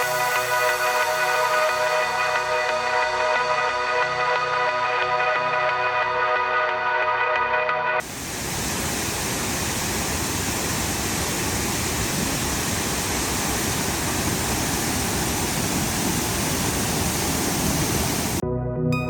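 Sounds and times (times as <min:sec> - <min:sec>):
waterfall rushing: 0:00.0 - 0:03.4, 0:08.0 - 0:18.4.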